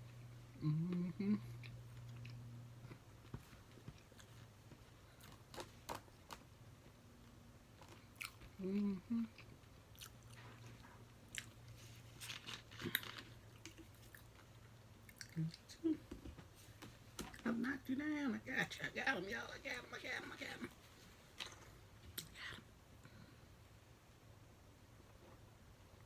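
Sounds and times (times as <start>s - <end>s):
steady low hum: 0.0s - 26.0s
person humming: 0.5s - 1.7s, 8.6s - 9.4s, 15.4s - 16.2s
person chewing food: 0.8s - 6.4s, 7.7s - 15.7s.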